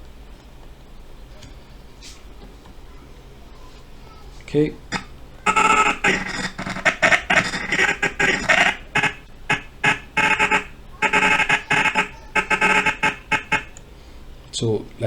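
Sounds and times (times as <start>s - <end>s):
man's voice in stuttering fragments: 4.9s - 13.7s.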